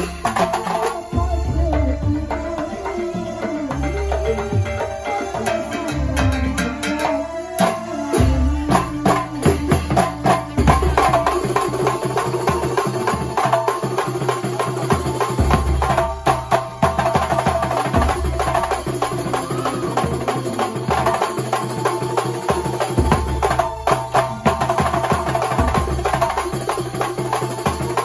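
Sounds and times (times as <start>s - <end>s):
folk music with fast drumming: 0.0s - 28.0s
deep bass: 1.1s - 4.8s.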